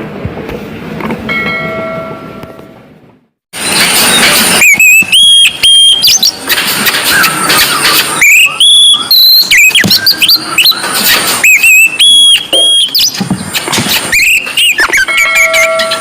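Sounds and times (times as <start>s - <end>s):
magpie-robin singing: 6.0s - 10.9s, 12.3s - 16.0s.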